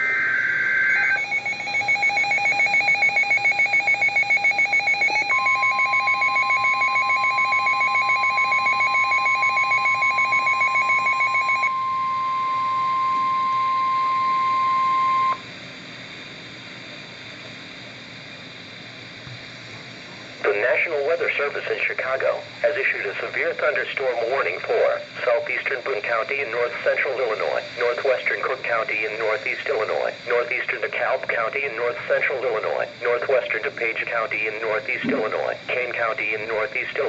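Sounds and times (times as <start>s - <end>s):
steady warning alarm tone: 0.0s - 15.5s, 31.4s - 37.0s
radio hiss: 17.3s - 37.0s
digital header burst: 34.8s - 35.8s
fast pulsing alert beep: 35.0s - 35.5s.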